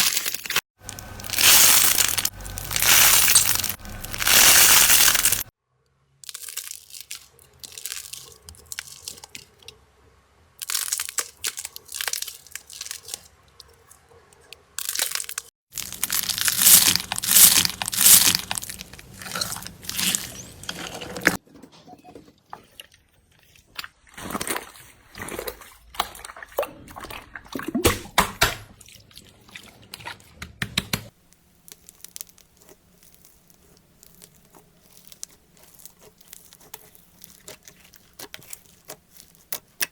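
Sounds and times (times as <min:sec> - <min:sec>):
slime crackling and squishing: 0:00.0 - 0:05.5, 0:06.2 - 0:09.7, 0:10.6 - 0:14.0, 0:14.8 - 0:21.4, 0:31.1 - 0:39.9.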